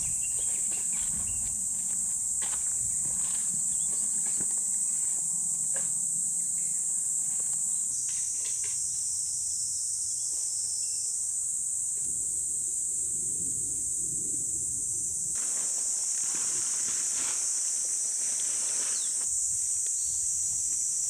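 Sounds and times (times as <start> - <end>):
insects droning: 0.0 - 21.0.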